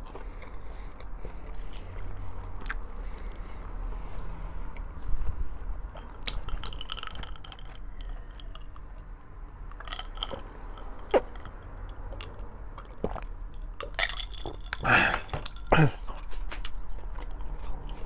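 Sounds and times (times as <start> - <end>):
person chewing food: 0.0 - 18.0.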